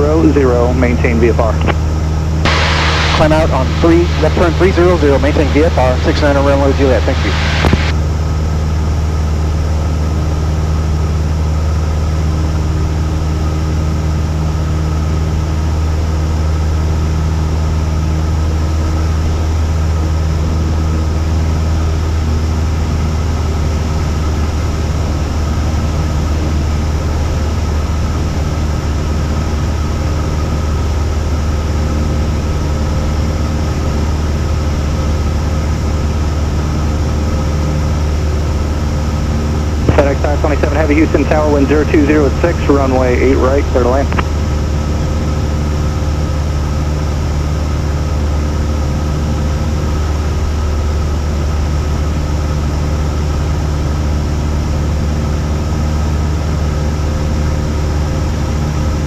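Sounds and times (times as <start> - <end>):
propeller plane engine droning: 0.0 - 59.0.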